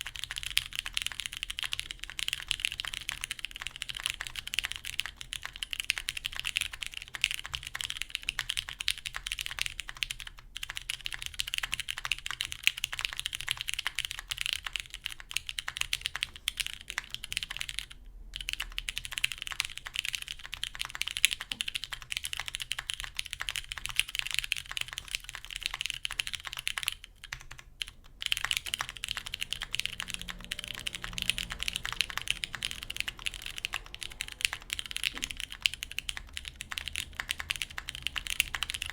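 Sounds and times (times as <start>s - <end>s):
fast typing on mechanical keyboard: 0.0s - 38.9s.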